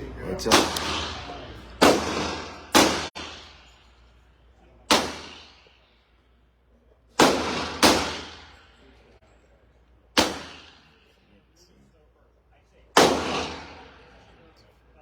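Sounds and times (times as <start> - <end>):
gunshots echoing: 0.4 - 3.7, 4.9 - 5.8, 7.2 - 8.8, 10.2 - 11.0, 13.0 - 14.2.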